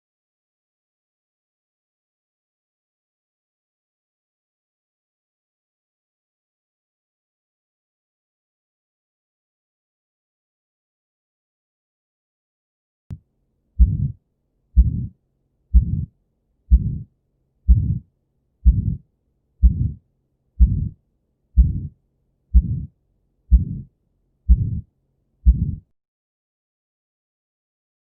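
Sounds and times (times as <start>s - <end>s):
heartbeat thumps: 13.8s - 14.2s, 14.8s - 15.1s, 15.7s - 16.1s, 16.7s - 17.1s, 17.7s - 18.0s, 18.6s - 19.0s, 19.6s - 20.0s, 20.6s - 21.0s, 21.6s - 21.9s, 22.5s - 22.9s, 23.5s - 23.9s, 24.5s - 24.9s, 25.5s - 25.9s.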